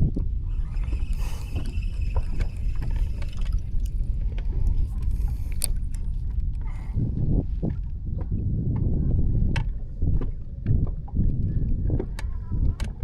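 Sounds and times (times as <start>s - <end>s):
wind rumble on microphone: 0.0s - 13.0s
light clicks and taps: 1.1s - 6.7s.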